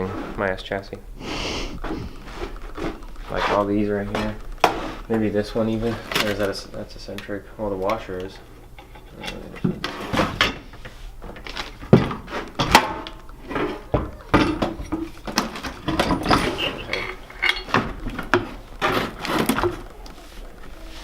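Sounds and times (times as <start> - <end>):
metal hardware clinking: 11.2 - 21.0.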